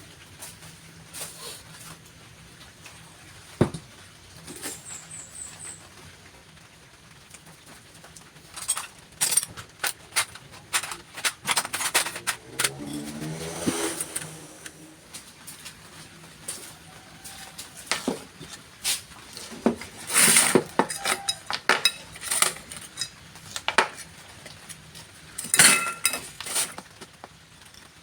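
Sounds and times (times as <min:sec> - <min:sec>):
metal parts clinking and knocking: 0:08.6 - 0:13.2, 0:19.6 - 0:24.6, 0:25.4 - 0:26.8.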